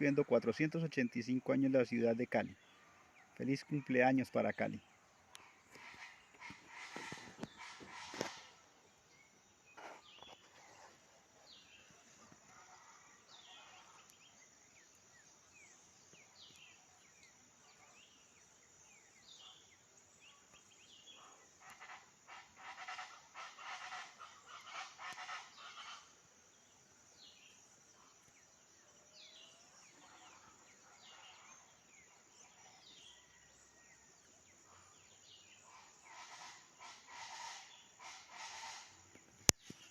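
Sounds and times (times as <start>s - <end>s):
dense animal calls: 5.4s - 8.7s, 21.6s - 26.2s, 35.7s - 39.0s.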